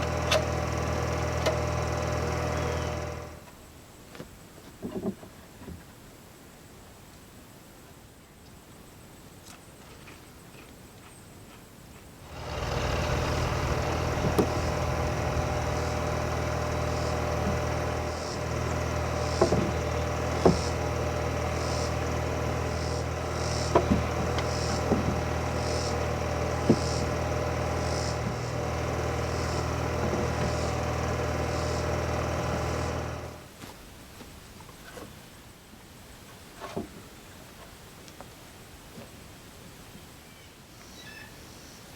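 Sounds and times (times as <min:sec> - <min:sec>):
machine motor humming: 0:00.0 - 0:03.5, 0:12.2 - 0:33.4.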